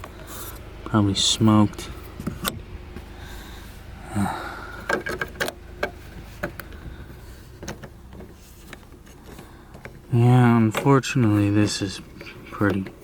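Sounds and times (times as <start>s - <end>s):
clicks and knocks of car trim: 4.8s - 6.8s.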